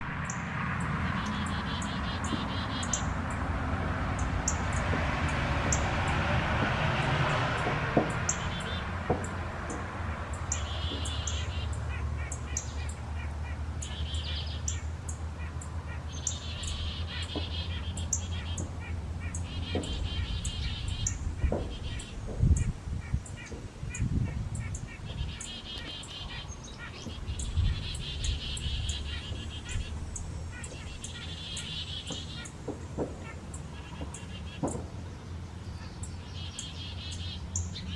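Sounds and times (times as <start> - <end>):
low wind rumble: 0.0 - 13.8, 18.6 - 31.3
songbirds chirping: 0.0 - 37.9
sharp knocks: 6.5 - 9.9, 19.7 - 20.1, 34.0 - 34.9.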